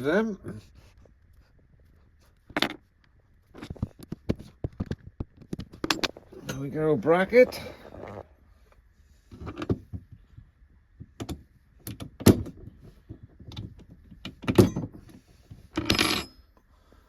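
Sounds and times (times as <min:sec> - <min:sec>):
metal bracket clanking: 0:05.8 - 0:07.7.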